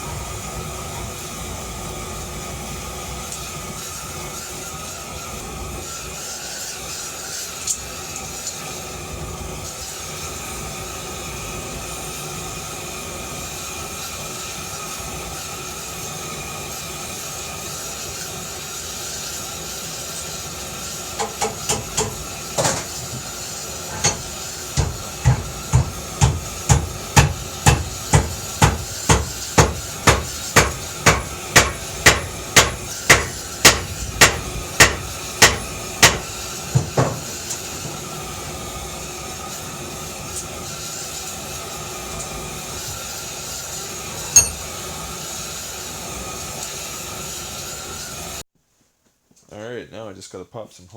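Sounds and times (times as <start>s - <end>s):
steady rushing hiss: 0.0s - 48.4s
hammer striking steel bar: 21.2s - 22.9s, 23.9s - 37.3s, 44.4s - 44.7s.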